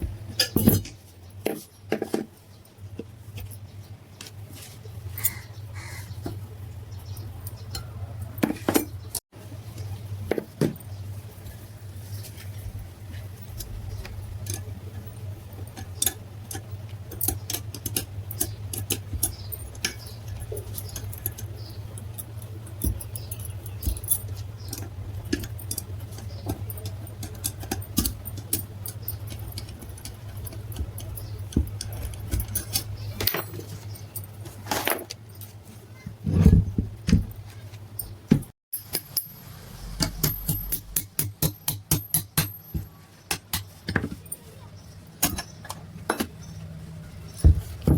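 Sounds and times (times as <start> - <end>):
metal parts clinking: 13.4 - 35.7, 38.8 - 41.0
low hum: 39.2 - 41.1.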